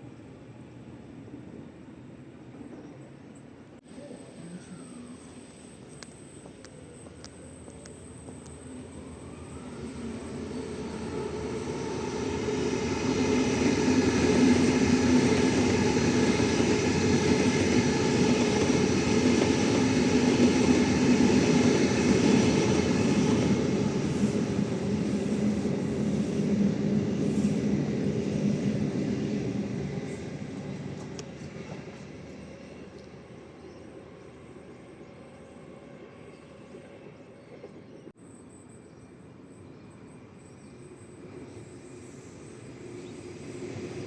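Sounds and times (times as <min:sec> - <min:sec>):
train motor hum: 0:04.0 - 0:36.8
train wheels rumbling on rails: 0:05.0 - 0:38.2.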